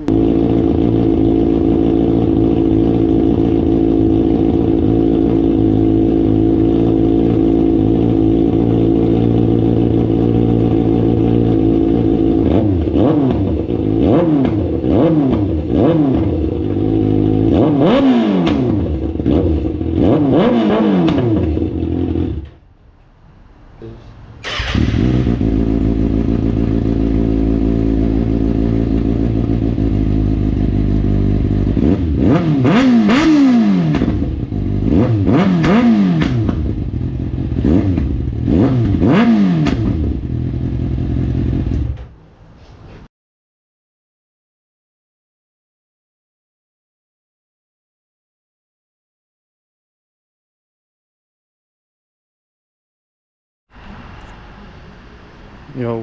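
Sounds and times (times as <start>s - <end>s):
engine revving in throttle blips: 0.0s - 22.6s, 23.8s - 42.9s
motorcycle engine running: 0.0s - 22.6s, 24.4s - 42.2s.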